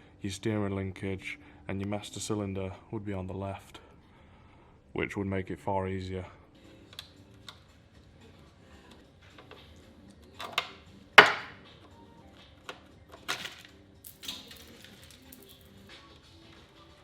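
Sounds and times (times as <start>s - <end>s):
faint background music: 0.0s - 17.0s
hand tools knocking on metal: 10.4s - 11.6s.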